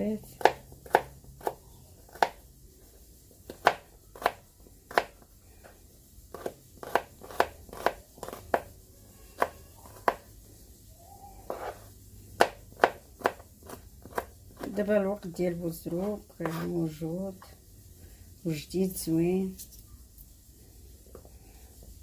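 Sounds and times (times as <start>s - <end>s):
knife chopping on cutting board: 0.4s - 2.4s, 3.5s - 5.2s, 6.3s - 8.7s, 9.4s - 10.2s, 11.5s - 14.8s, 16.4s - 16.7s.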